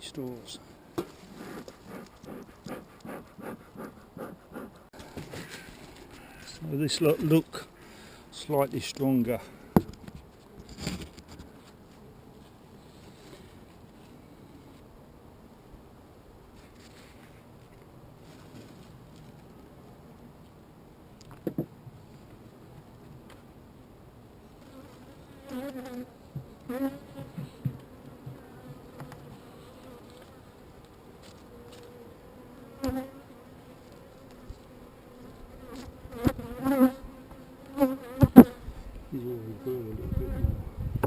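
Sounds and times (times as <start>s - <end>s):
bees flying close past: 24.6s - 26.1s, 26.7s - 38.8s.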